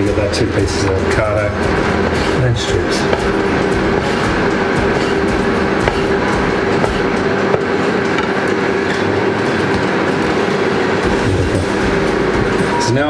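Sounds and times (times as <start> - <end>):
kitchen appliance humming: 0.0 - 13.0
knife tapping chopping board: 2.8 - 8.5.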